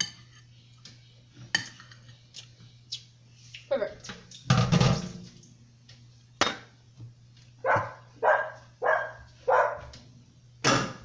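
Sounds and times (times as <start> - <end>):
dog barking: 7.6 - 10.0.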